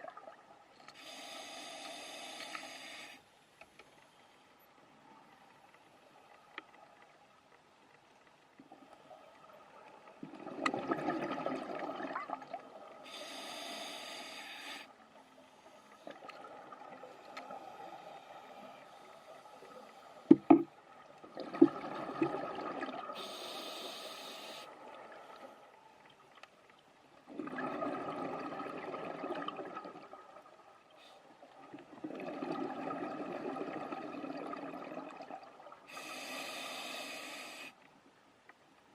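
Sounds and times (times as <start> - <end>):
exhaled bubbles underwater: 0.0 - 0.6, 8.7 - 13.2, 16.1 - 18.6, 19.5 - 25.7, 27.3 - 30.8, 31.4 - 36.1
hissing regulator inhalations: 1.0 - 3.3, 13.0 - 16.2, 23.2 - 24.8, 35.9 - 37.8.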